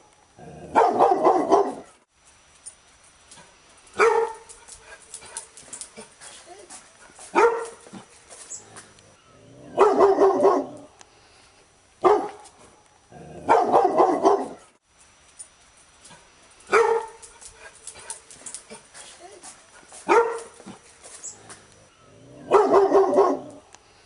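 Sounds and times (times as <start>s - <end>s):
dog barking: 0.7s - 2.0s, 4.0s - 4.5s, 7.2s - 8.0s, 9.7s - 10.9s, 12.0s - 12.4s, 13.4s - 14.7s, 16.7s - 17.2s, 20.0s - 20.8s, 22.4s - 23.6s.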